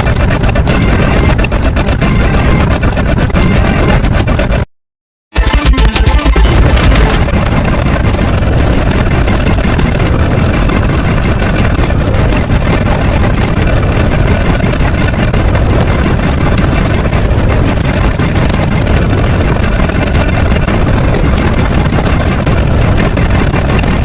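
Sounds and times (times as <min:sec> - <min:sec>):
loud engine-like rumble: 0:05.4 - 0:24.0.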